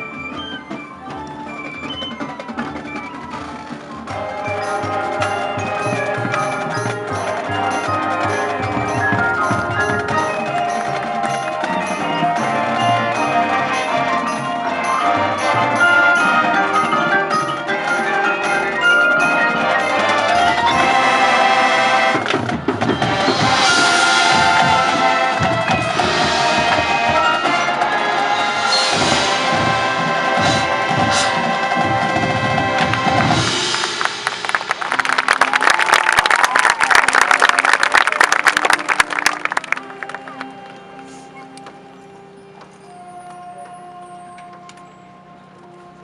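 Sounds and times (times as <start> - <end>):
mallet percussion music: 0.0 - 35.1
wood block: 4.1 - 21.2.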